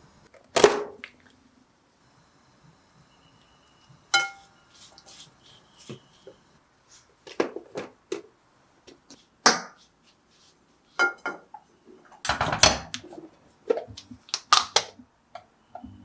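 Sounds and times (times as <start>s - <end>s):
kitchen items clattering: 11.0s - 15.0s.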